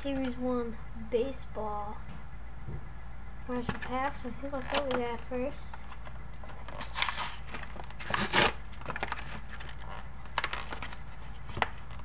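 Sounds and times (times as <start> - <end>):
card pack wrapper crinkling: 5.9 - 12.0.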